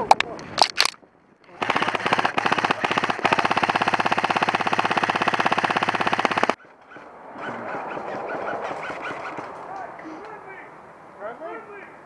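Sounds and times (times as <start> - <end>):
airsoft rifle automatic fire: 1.5 - 6.6.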